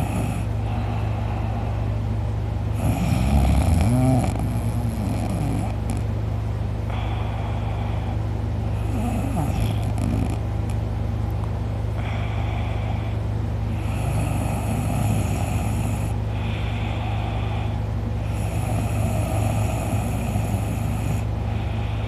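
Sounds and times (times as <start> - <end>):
man snoring loudly: 0.0 - 0.5, 2.7 - 6.0, 8.7 - 10.4, 13.7 - 16.2, 18.2 - 21.3
low hum: 0.0 - 22.0.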